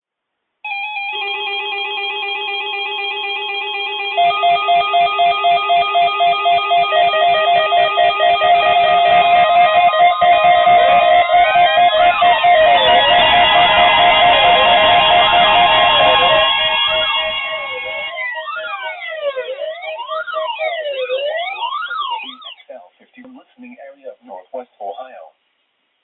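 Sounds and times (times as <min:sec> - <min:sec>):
buzzy trilling synth melody: 0:04.0 - 0:22.6
pulsing electronic beat: 0:04.2 - 0:22.6
sweeping synth tones: 0:04.2 - 0:22.7.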